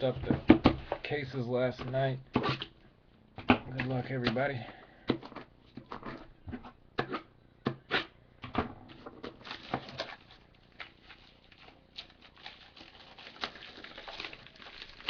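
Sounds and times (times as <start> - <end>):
cards and packaging handled: 9.0 - 15.0.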